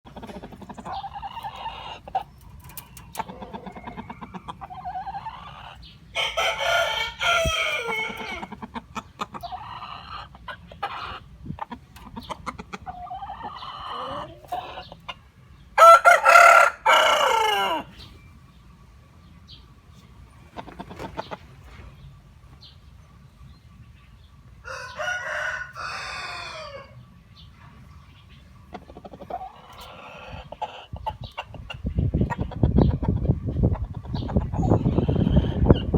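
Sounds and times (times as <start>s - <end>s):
rooster crowing: 6.2s - 8.5s, 15.8s - 18.0s, 24.6s - 27.0s.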